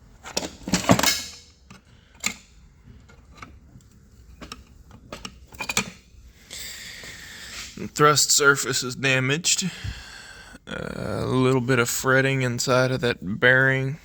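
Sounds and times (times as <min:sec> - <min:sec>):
metal engine parts clanking: 0:00.2 - 0:06.1.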